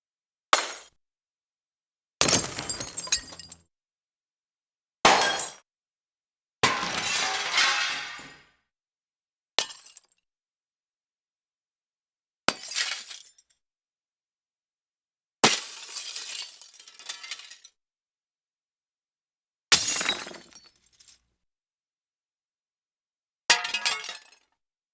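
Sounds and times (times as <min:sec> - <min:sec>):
glass breaking: 0:02.2 - 0:03.6, 0:06.7 - 0:08.4
glass shards tinkling: 0:02.2 - 0:03.6.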